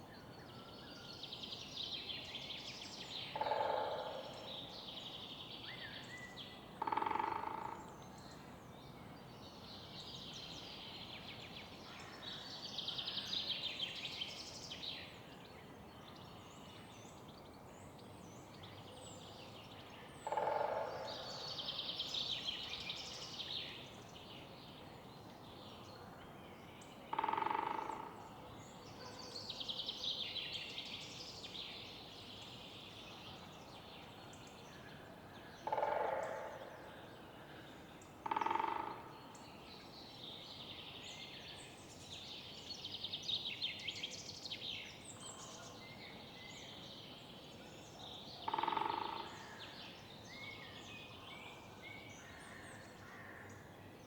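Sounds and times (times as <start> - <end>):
songbirds trilling: 47.9 - 53.7.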